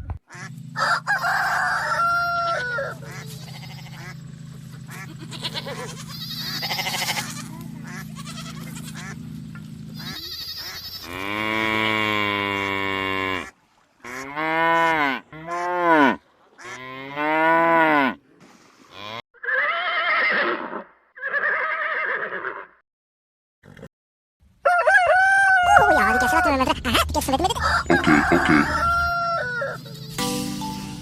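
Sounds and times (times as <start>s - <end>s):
cattle mooing: 0.3s - 9.2s, 10.0s - 18.2s, 18.9s - 19.2s, 25.5s - 30.1s.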